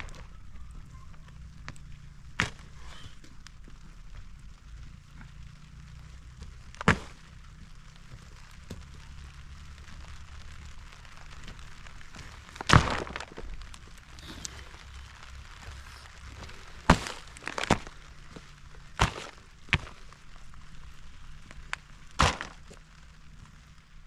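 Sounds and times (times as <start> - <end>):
wood cracking: 0.0 - 24.0.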